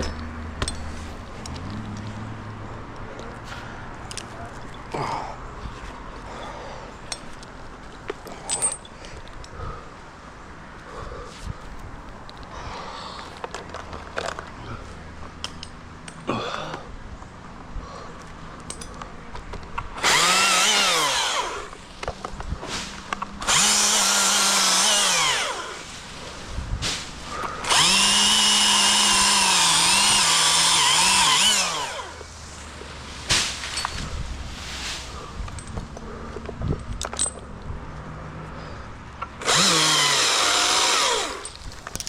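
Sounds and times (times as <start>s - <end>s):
chainsaw revving: 20.0s - 21.8s, 23.4s - 26.0s, 27.3s - 32.3s, 39.4s - 41.5s
rustling and clicking handling sounds: 41.4s - 42.0s.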